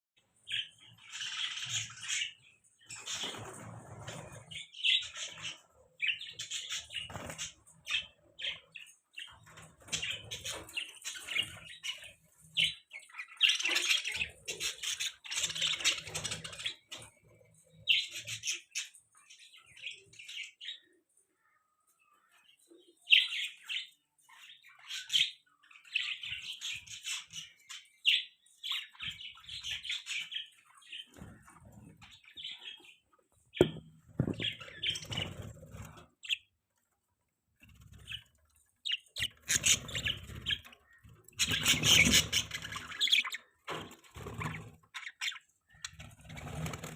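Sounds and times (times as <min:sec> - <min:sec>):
budgies chirping and chattering: 0:00.2 - 0:46.9.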